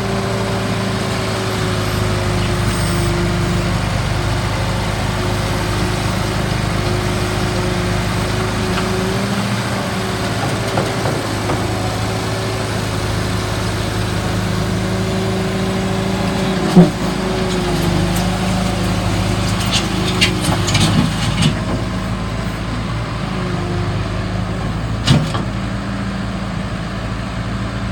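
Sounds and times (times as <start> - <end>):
skid steer engine running: 0.0 - 27.9.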